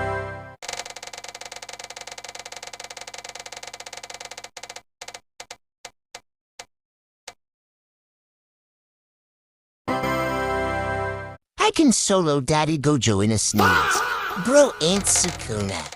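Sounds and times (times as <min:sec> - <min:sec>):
music: 0:00.0 - 0:00.6, 0:09.9 - 0:11.4.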